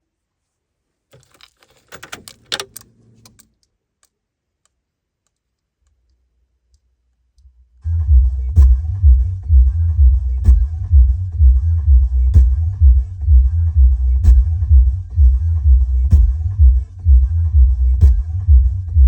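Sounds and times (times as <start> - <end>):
clicks and knocks: 1.1 - 3.7
electronic music with deep bass: 7.8 - 19.0.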